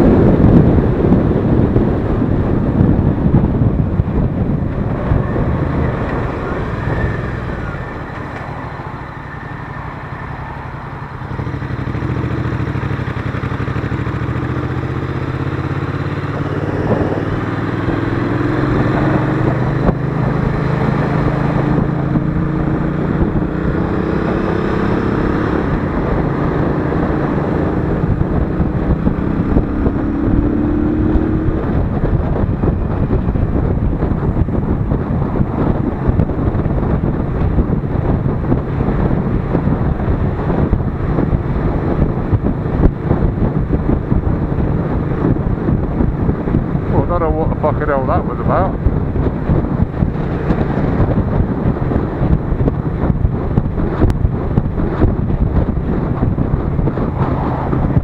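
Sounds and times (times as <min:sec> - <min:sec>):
motorcycle engine accelerating: 0:00.0 - 0:58.0
wind noise on microphone: 0:00.0 - 0:58.0.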